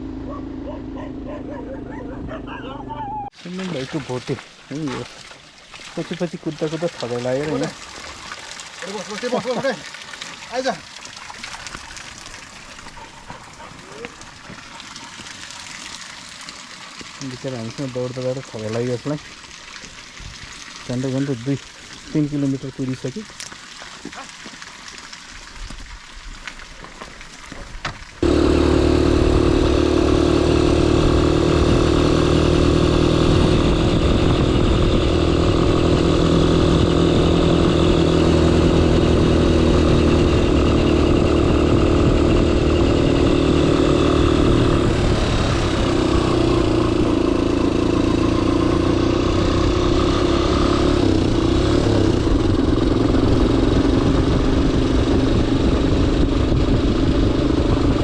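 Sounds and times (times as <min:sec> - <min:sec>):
small engine running steadily: 0:00.0 - 0:03.0, 0:06.0 - 0:09.8, 0:11.7 - 0:19.9, 0:27.8 - 0:58.0.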